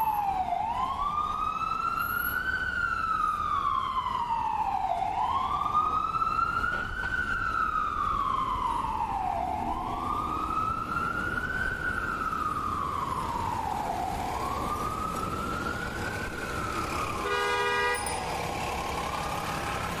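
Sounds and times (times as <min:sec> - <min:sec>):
ambulance siren wailing: 0:00.0 - 0:20.0
low traffic rumble: 0:00.0 - 0:20.0
short horn blast: 0:17.2 - 0:18.2.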